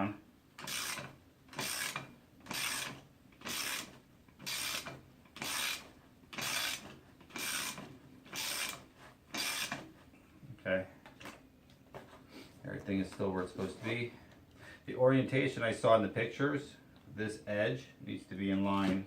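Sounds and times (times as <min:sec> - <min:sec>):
ratchet wrench ratcheting: 0:00.6 - 0:05.8, 0:06.4 - 0:06.8, 0:07.4 - 0:08.8, 0:09.4 - 0:09.8.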